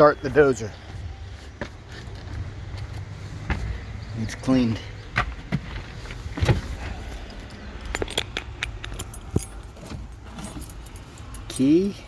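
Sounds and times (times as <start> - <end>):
sharp clicks and light knocks: 7.2 - 10.7
keys jangling: 7.3 - 12.0.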